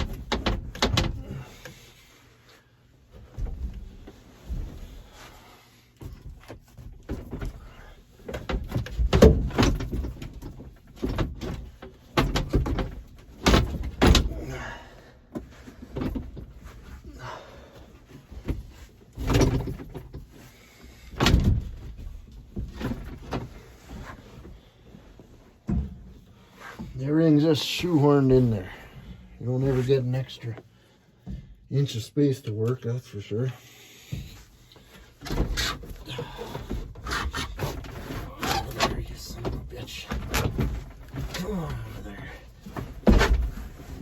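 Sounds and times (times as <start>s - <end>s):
parts clunking and knocking: 0.0s - 2.0s, 3.0s - 5.2s, 6.0s - 17.1s, 17.7s - 29.4s, 30.4s - 31.7s, 34.0s - 44.0s.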